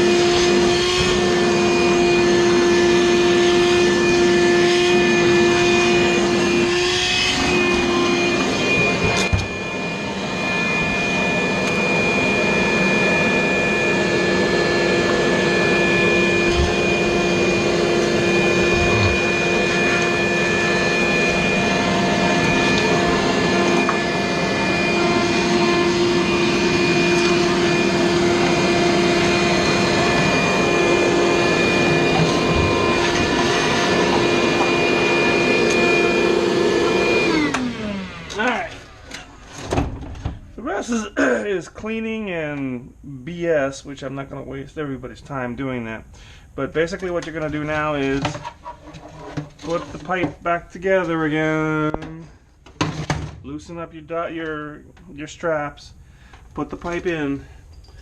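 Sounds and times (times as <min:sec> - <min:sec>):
vacuum cleaner running: 0:00.0 - 0:40.8, 0:47.2 - 0:50.4.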